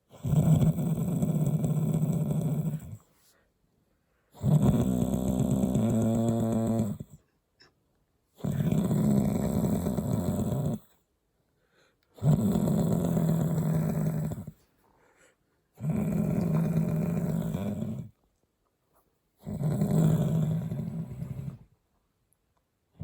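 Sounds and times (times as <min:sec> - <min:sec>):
person snoring: 0:15.8 - 0:18.1, 0:19.4 - 0:21.6.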